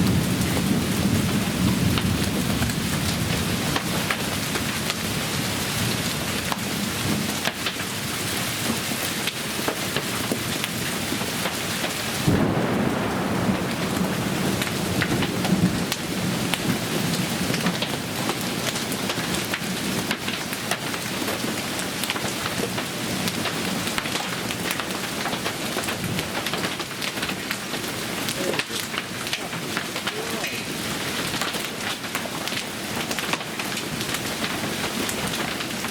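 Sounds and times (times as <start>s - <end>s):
heavy rain and hail pelting: 0.0s - 35.9s
low thunder rumble: 12.2s - 17.8s.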